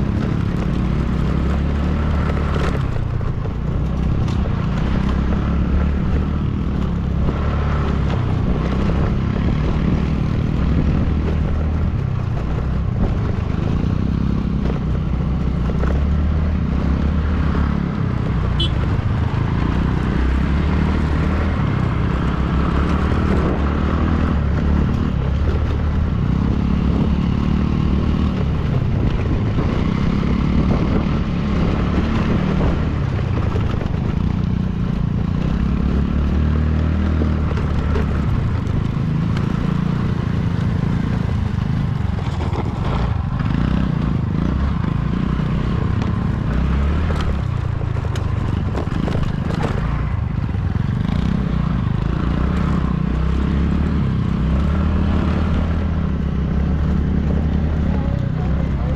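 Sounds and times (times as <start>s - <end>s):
motorcycle engine running: 0.0s - 58.9s.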